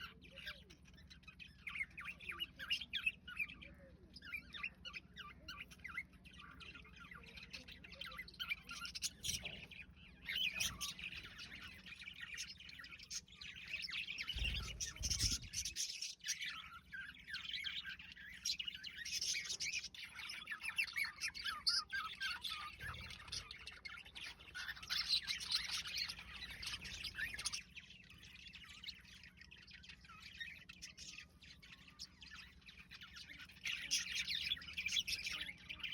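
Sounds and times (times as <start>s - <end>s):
budgerigars chattering: 0.0s - 35.9s.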